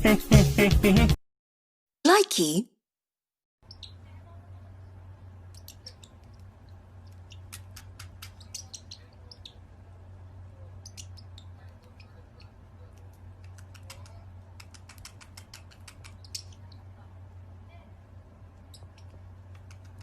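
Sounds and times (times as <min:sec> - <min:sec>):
parrot chirping and clicking: 0:03.6 - 0:04.0, 0:05.4 - 0:10.1, 0:10.7 - 0:16.9, 0:18.4 - 0:20.0
steady low hum: 0:03.6 - 0:20.0.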